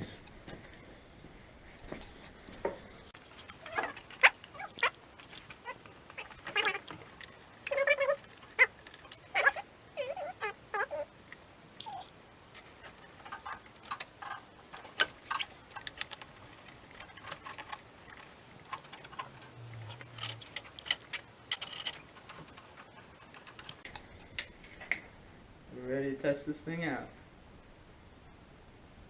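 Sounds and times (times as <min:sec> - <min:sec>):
hand tools clicking and clinking: 0:03.2 - 0:23.8.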